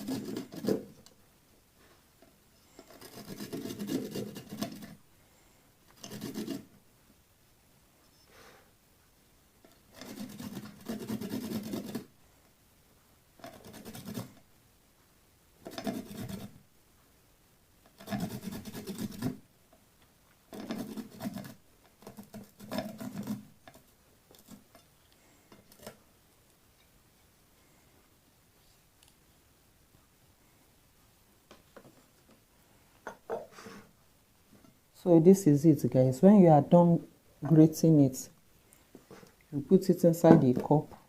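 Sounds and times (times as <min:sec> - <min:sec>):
nut rasping on hand grater: 0:00.0 - 0:00.9, 0:02.8 - 0:05.0, 0:06.0 - 0:06.7, 0:09.9 - 0:12.1, 0:13.4 - 0:14.4, 0:15.6 - 0:16.6, 0:18.0 - 0:19.4, 0:20.5 - 0:23.4.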